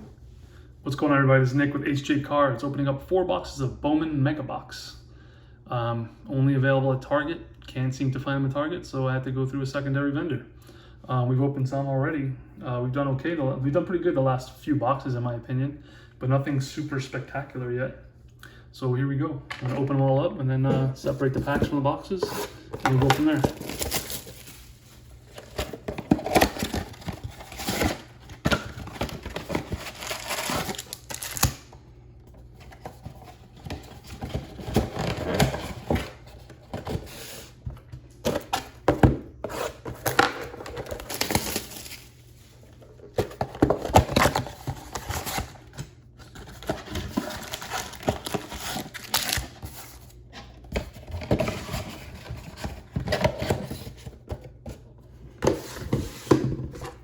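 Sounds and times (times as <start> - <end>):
card packs rustling: 20.6 - 57.0
plastic wrapping crinkling: 22.8 - 31.7
cardboard tearing: 25.3 - 31.7, 46.4 - 50.0.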